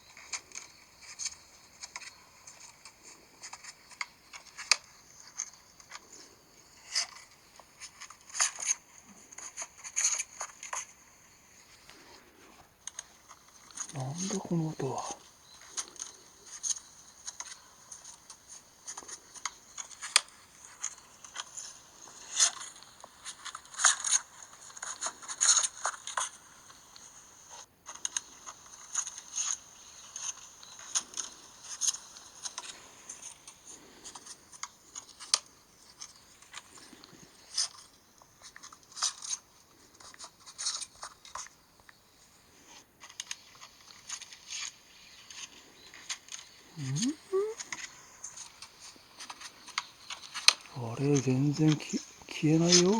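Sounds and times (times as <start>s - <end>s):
phone speaker glitch crackling: 46.8s - 47.6s.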